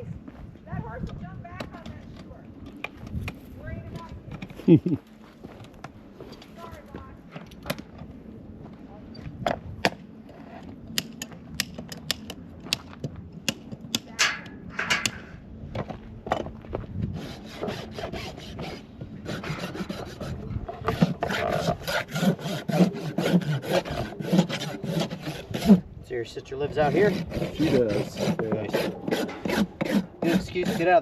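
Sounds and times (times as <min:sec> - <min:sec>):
rasp filing a hoof: 0:17.1 - 0:25.9, 0:26.6 - 0:31.0.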